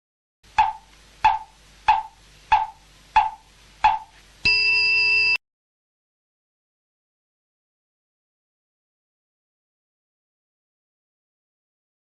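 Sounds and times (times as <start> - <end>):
wooden fish drum strikes: 0.6 - 4.1.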